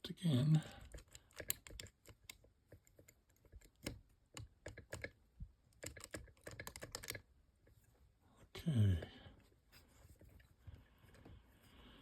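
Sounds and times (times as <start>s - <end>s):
lock picking metallic clicks: 0.8s - 2.4s.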